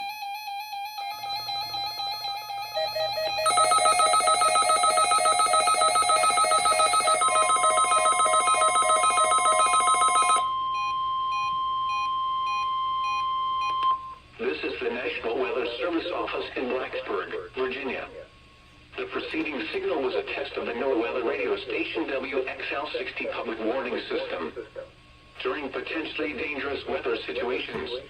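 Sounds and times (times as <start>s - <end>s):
electronic alarm beeps: 0.0s - 14.2s
steady warning tone: 0.6s - 14.2s.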